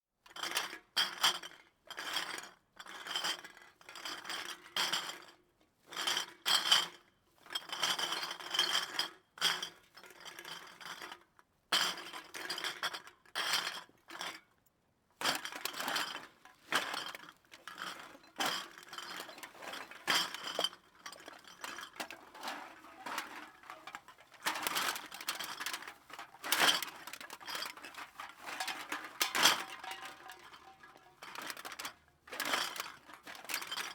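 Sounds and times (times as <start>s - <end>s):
glass bottles clinking: 17.8s - 25.8s, 27.4s - 31.8s.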